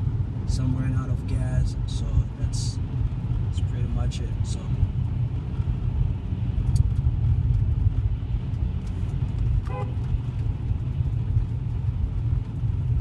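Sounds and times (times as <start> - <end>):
car engine and road noise: 0.0 - 13.0.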